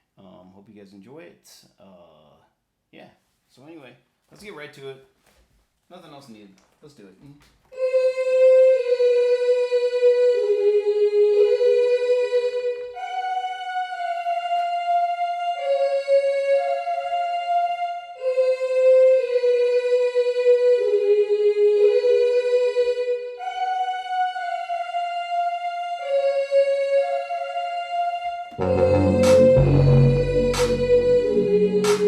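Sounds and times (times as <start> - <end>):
synth lead melody: 28.6 - 32.0.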